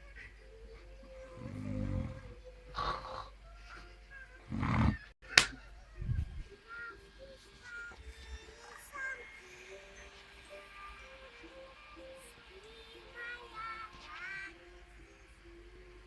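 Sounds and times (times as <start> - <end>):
person snoring: 1.1 - 3.4, 4.4 - 5.1
sharp click: 5.3 - 5.6.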